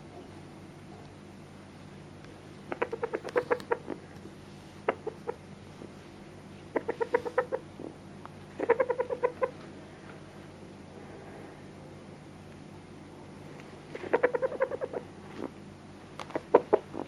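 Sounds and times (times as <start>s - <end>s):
rooster clucking: 2.7s - 4.1s, 4.8s - 5.5s, 6.6s - 9.7s, 13.9s - 15.6s, 16.2s - 17.0s.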